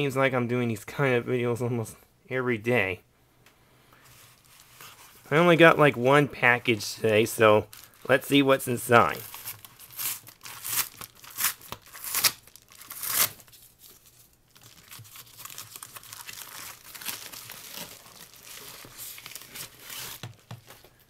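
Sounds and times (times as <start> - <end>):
packaging crinkling and rustling: 7.6 - 8.4, 9.0 - 21.0
package ripping open: 9.2 - 20.8.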